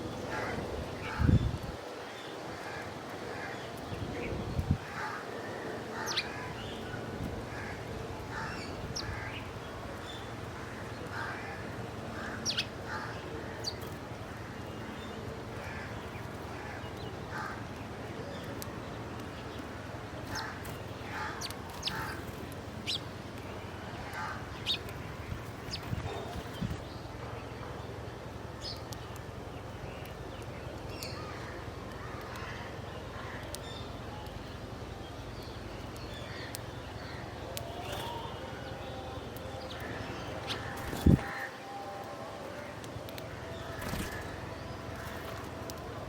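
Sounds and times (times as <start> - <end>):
small birds chirping: 0.0 - 41.6, 42.6 - 46.0
crows cawing: 4.8 - 6.6, 7.5 - 9.5, 10.6 - 13.7, 15.6 - 17.7, 20.3 - 22.3, 24.0 - 24.5, 40.5 - 41.6.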